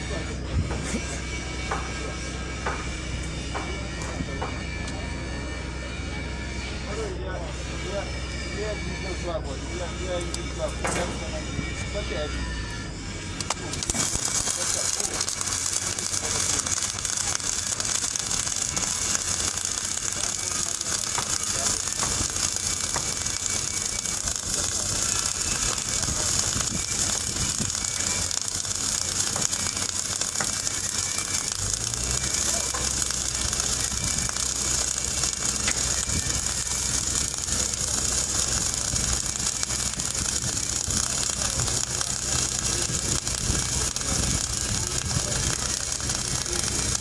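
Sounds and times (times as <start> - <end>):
low machine hum: 0.0 - 47.0
arc welding crackling hiss: 13.3 - 47.0.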